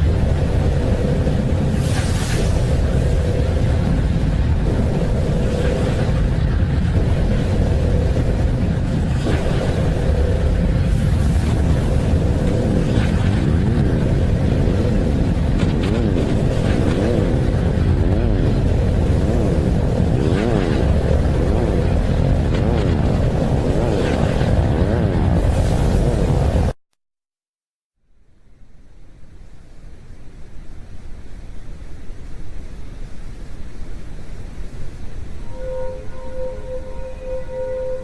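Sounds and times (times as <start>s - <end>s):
constant hum: 0.0s - 26.8s
deep steady rumble: 0.0s - 26.8s.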